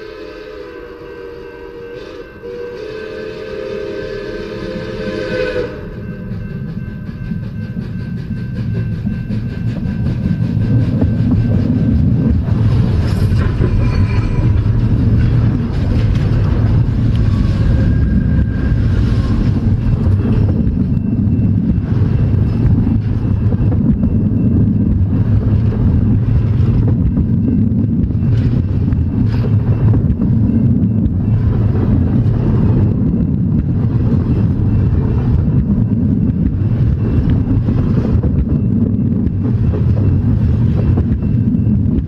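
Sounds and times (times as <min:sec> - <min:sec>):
steam locomotive whistle: 0:00.0 - 0:06.5, 0:16.3 - 0:19.7
locomotive exhaust beat: 0:00.0 - 0:42.0.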